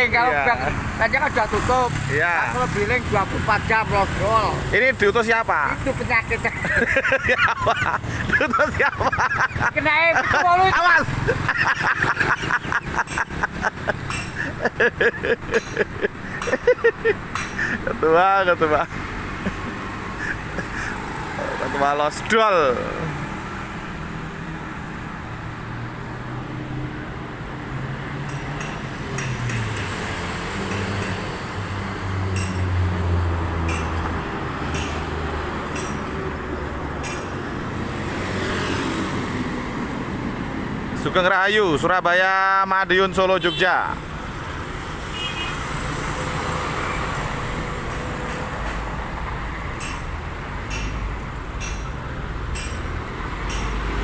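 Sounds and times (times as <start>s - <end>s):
bus engine rumbling: 0.0s - 42.0s, 43.9s - 54.0s
traffic hiss: 17.6s - 21.9s.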